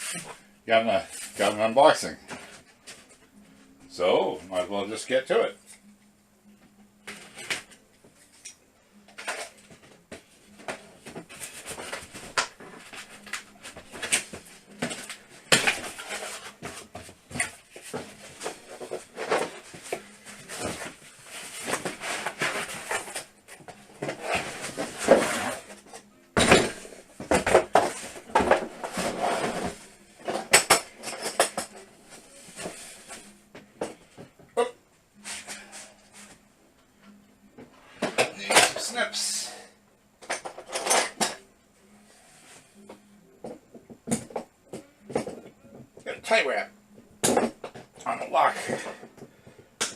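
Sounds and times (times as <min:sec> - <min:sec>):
cardboard box rustling and scraping: 0:15.7 - 0:23.3, 0:24.0 - 0:25.8, 0:27.2 - 0:30.4.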